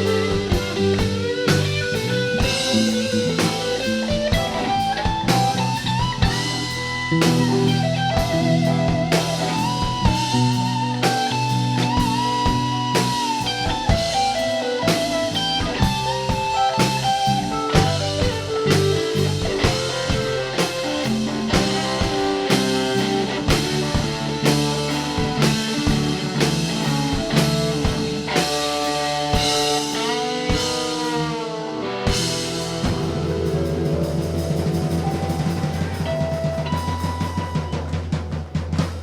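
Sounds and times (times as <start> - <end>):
electric guitar bent notes: 0.0 - 38.0
drums and bass: 0.0 - 39.0.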